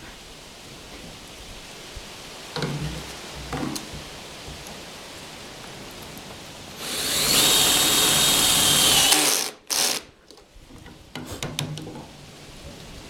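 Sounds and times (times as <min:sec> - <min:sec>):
power drill whining: 0:06.8 - 0:10.1.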